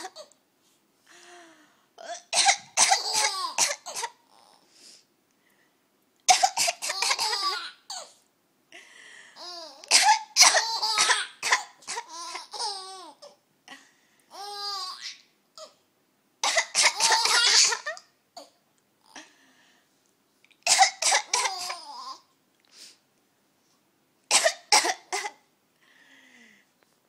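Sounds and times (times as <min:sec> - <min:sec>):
baby laughing: 0:06.9 - 0:08.1, 0:10.5 - 0:11.4, 0:12.0 - 0:13.3, 0:16.9 - 0:18.1.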